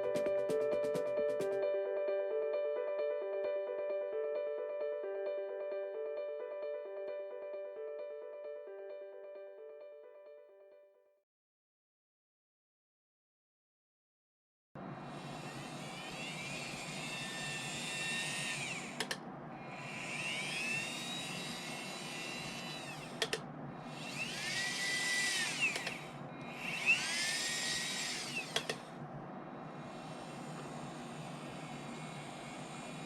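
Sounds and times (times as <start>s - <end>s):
small electric motor whirring: 14.9s - 33.0s
sharp clicks: 16.1s - 19.3s, 20.1s - 23.5s, 24.1s - 29.0s.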